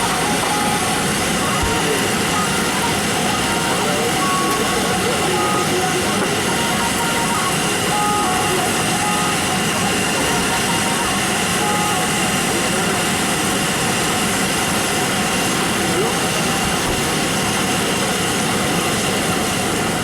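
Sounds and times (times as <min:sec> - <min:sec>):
background voices: 0:00.0 - 0:13.2
continuous noise: 0:00.0 - 0:20.0.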